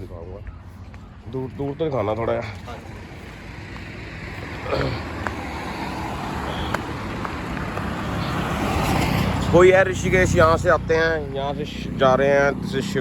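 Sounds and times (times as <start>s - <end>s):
vehicle engine and tyre rumble: 0.0s - 13.0s.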